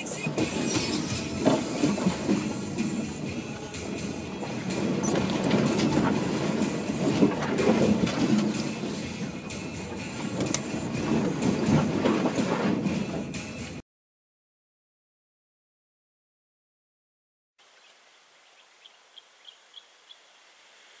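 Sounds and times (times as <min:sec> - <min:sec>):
tyres rumbling on rough track: 0:00.0 - 0:13.8.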